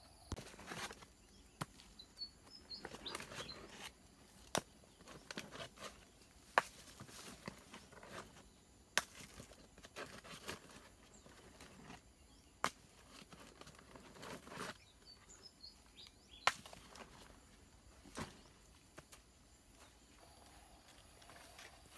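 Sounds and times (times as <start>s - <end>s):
sharp knocks of stones and wood: 0.4s - 1.9s, 9.0s - 10.1s, 12.6s - 13.1s, 16.4s - 17.1s
faint high chirps: 19.8s - 21.9s.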